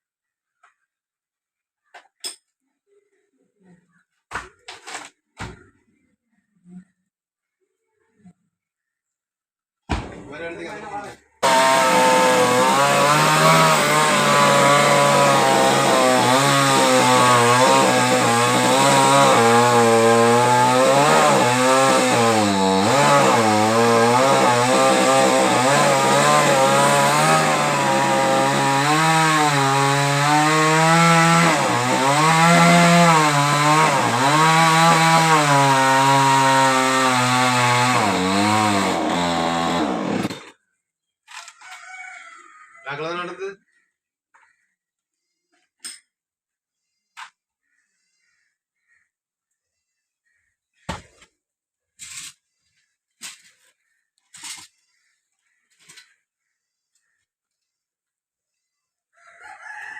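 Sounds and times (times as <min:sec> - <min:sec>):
chainsaw cutting wood: 0:11.4 - 0:40.6.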